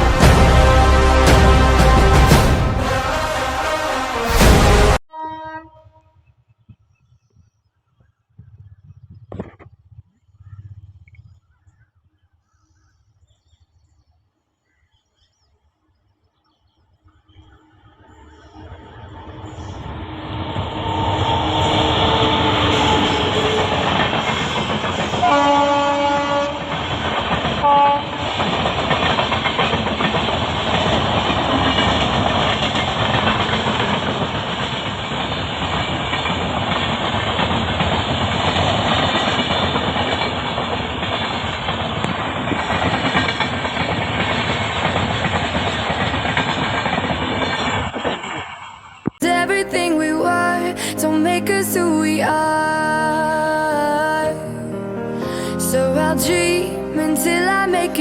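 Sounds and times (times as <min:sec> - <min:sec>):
train wheels rumbling on rails: 0:00.0 - 0:03.8, 0:18.2 - 0:49.2
train horn blast: 0:00.0 - 0:06.1, 0:19.5 - 0:29.0.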